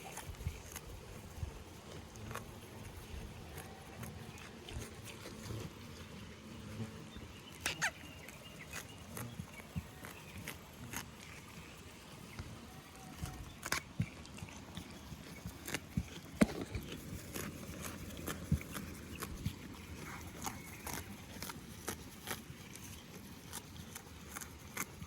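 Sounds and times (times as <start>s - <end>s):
hooves knocking on hard ground: 7.5s - 25.0s.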